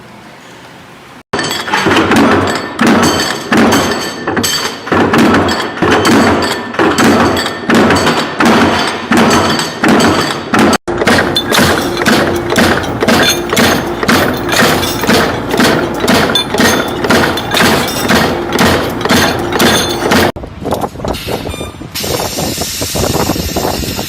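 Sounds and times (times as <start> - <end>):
machine knocking rhythmically: 1.4 - 20.4.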